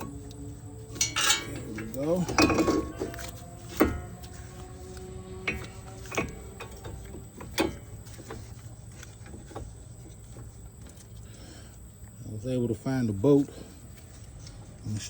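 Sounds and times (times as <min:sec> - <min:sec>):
low steady hum: 0:00.0 - 0:15.0
metal hardware clinking: 0:00.9 - 0:04.3, 0:05.4 - 0:08.5.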